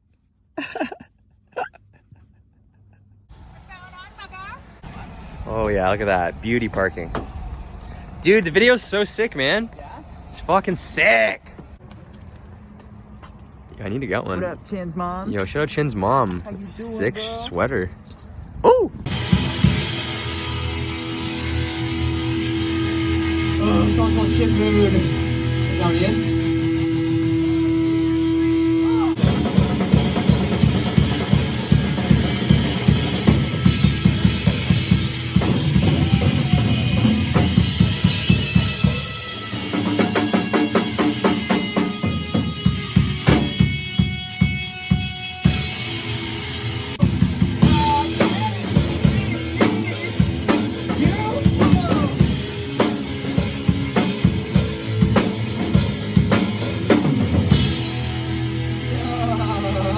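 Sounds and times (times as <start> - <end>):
drum kit playing steady beat: 19.1 - 22.8, 28.8 - 58.6.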